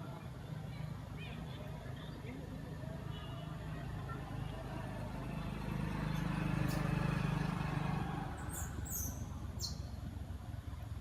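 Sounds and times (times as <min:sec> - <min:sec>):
low engine hum: 0:03.6 - 0:11.0.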